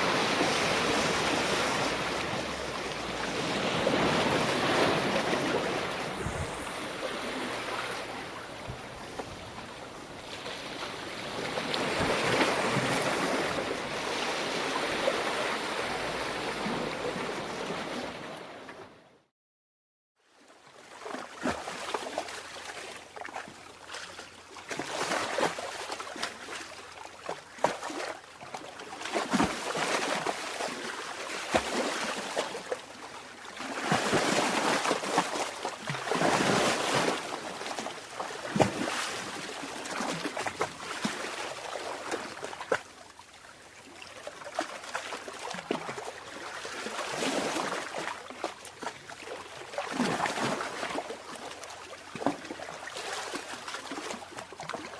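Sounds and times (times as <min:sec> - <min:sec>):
sea water lapping and sloshing: 0:00.0 - 0:19.1, 0:20.2 - 0:54.9
small sharp water splashes: 0:21.0 - 0:54.9.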